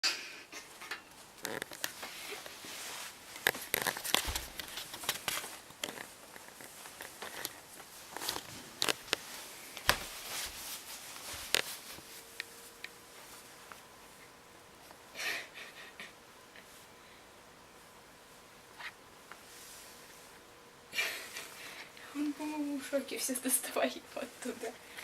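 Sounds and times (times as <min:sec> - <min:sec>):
faint steady hum: 0:00.0 - 0:25.0
sleeping bag fabric rustling: 0:01.2 - 0:13.6.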